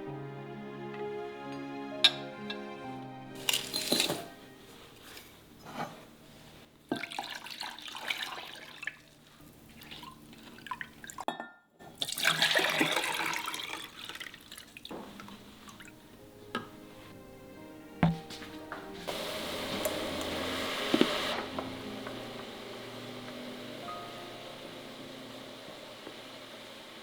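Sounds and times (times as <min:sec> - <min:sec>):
water running in a sink: 0:06.9 - 0:11.2, 0:12.0 - 0:16.0, 0:19.1 - 0:27.0.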